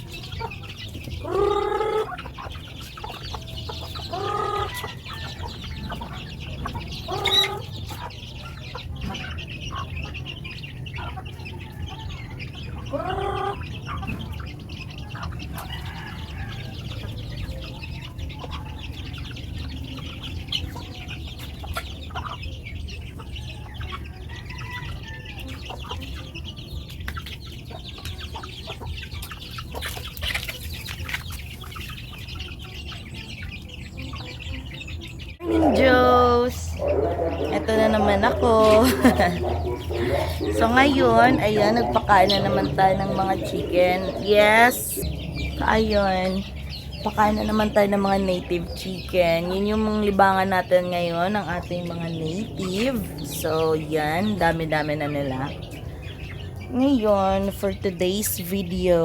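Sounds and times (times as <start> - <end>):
chicken drawn-out calls: 0.0 - 57.8
chickens clucking: 0.0 - 59.0
steady low rumble: 35.3 - 59.0.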